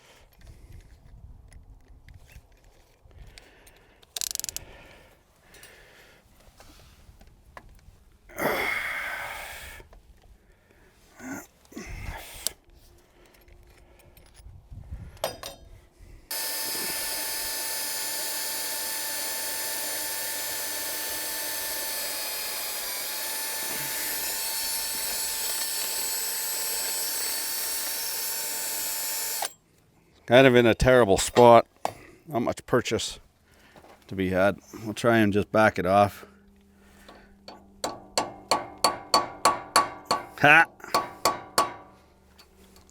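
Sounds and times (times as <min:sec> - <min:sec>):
scrape: 0:06.4 - 0:07.2
power drill whining: 0:16.3 - 0:29.6.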